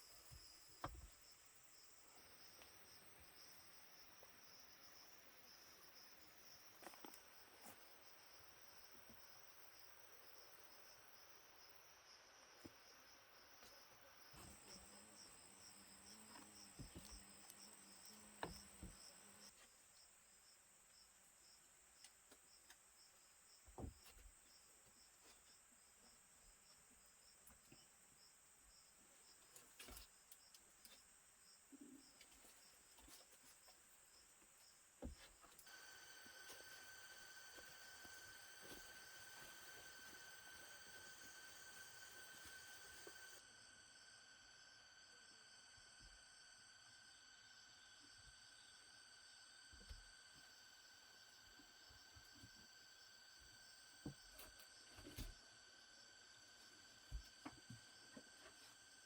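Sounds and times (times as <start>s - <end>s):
faint insects chirping: 0.0s - 59.0s
steady high whine: 35.7s - 47.6s.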